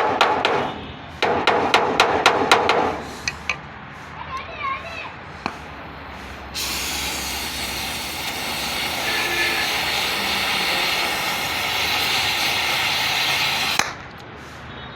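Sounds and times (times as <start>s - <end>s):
electric welding arc crackling: 6.6s - 13.9s.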